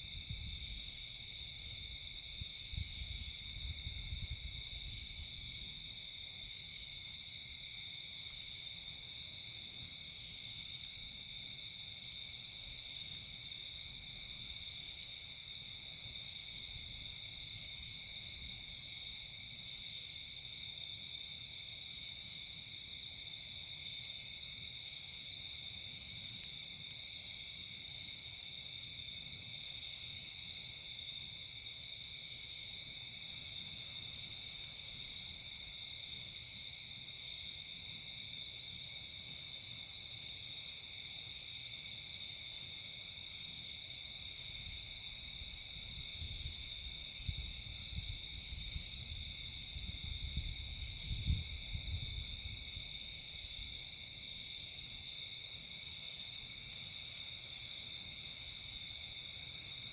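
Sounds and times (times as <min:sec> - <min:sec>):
night insects chirring: 0:00.0 - 0:59.9.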